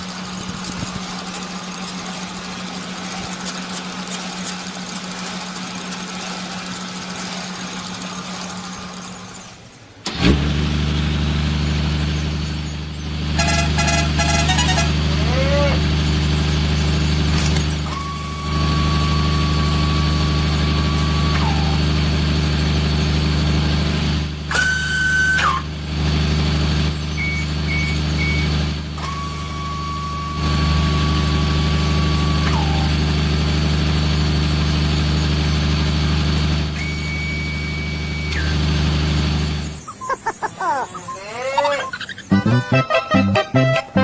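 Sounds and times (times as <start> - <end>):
truck engine running: 0.0 - 44.0
horn-like tones: 13.3 - 15.8
short beeps: 40.9 - 42.3.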